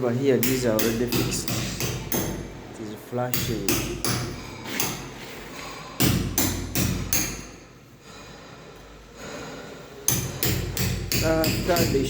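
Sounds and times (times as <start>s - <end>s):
hammer blows: 10.1s - 12.0s.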